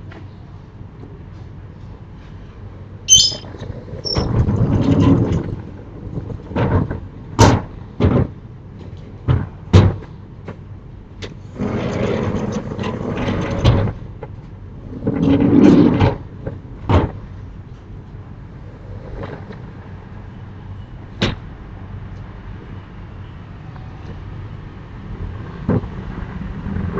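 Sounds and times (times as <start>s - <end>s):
shutters rumbling along tracks: 3.4s - 9.6s, 10.6s - 20.0s.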